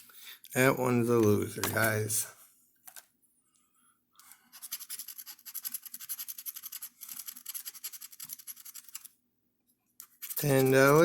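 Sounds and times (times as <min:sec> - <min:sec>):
scratching lottery ticket coating: 0:04.5 - 0:09.2, 0:10.0 - 0:11.0.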